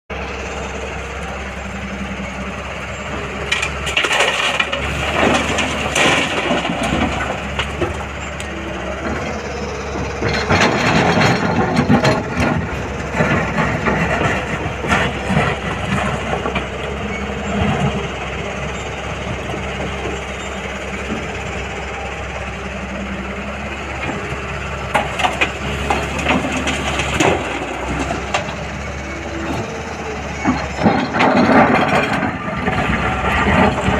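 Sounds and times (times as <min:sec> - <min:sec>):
excavator diesel engine running: 0:00.1 - 0:33.9
soil crunching and scraping: 0:02.3 - 0:22.3.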